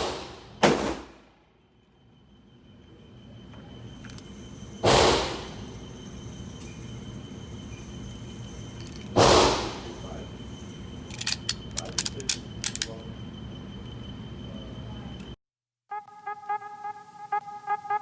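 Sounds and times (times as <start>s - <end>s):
loud gunshots with ringing echo: 0.0s - 1.2s, 9.2s - 9.8s.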